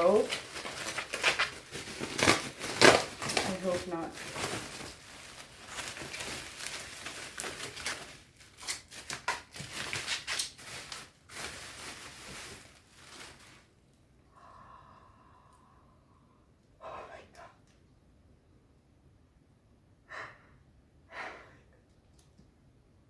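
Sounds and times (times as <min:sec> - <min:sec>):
packaging rustling and crinkling: 0:00.0 - 0:13.8.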